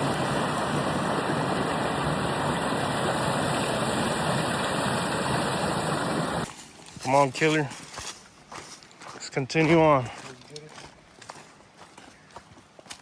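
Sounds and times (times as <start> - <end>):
waterfall splashing: 0.0 - 6.5.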